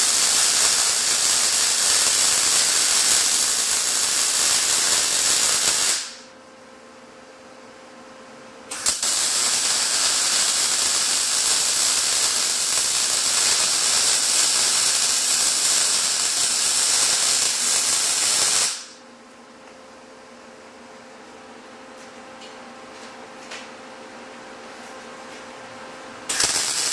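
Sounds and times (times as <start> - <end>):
arc welder hissing: 0.0 - 6.3, 8.7 - 19.0, 26.3 - 26.9.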